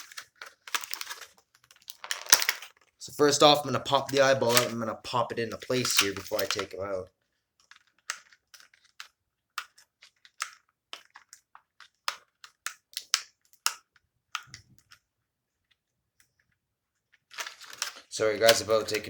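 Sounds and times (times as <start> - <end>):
small plastic clicks and taps: 7.6 - 15.1.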